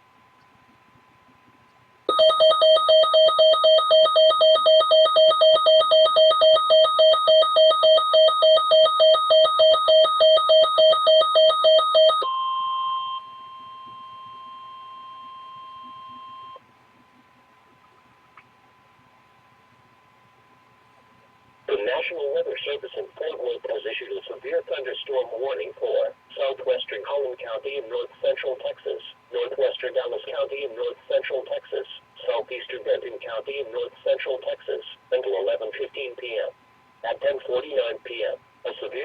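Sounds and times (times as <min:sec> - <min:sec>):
warbling electronic alarm: 0:02.1 - 0:16.6.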